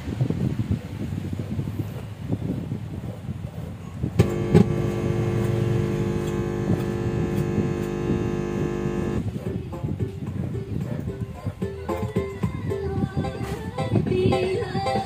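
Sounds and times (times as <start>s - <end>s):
handling rumble: 4.1s - 9.2s
loudspeaker pops: 4.2s - 9.2s
mains hum buzz: 4.2s - 9.2s.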